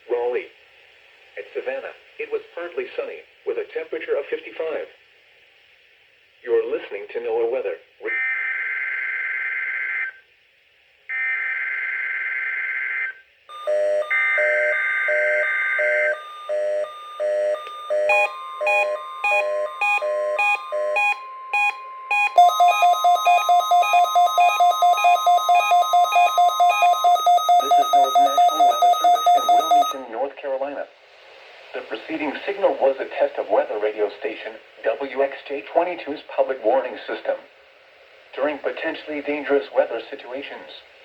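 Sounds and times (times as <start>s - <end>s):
radio receiver alarm beeps: 11.1s - 30.1s
steady warning alarm tone: 11.1s - 30.1s.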